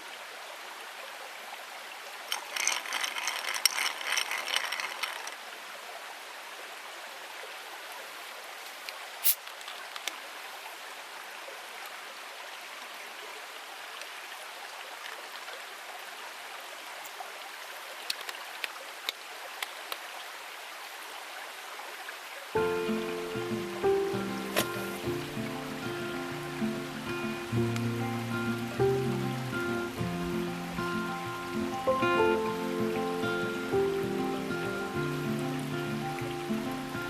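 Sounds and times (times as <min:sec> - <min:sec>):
rattling clicks: 0:02.3 - 0:05.4.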